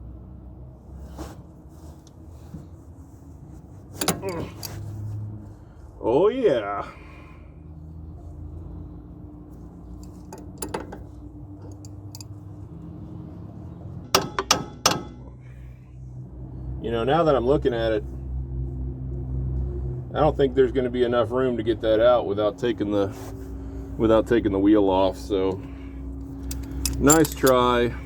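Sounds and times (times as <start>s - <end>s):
low steady hum: 0.0s - 28.0s
wrench scraping: 3.9s - 4.9s, 9.9s - 12.5s, 14.1s - 15.3s, 26.3s - 28.0s
wrench click: 4.0s - 4.7s.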